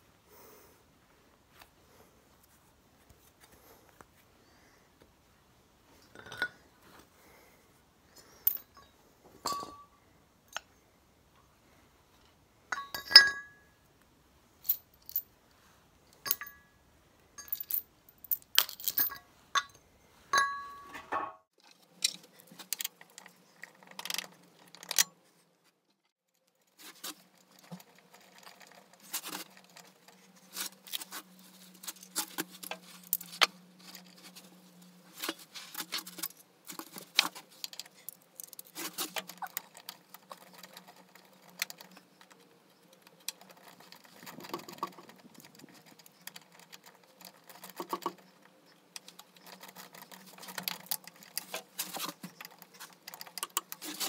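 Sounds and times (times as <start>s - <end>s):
metal tools clinking: 12.7s - 13.6s, 17.4s - 19.8s.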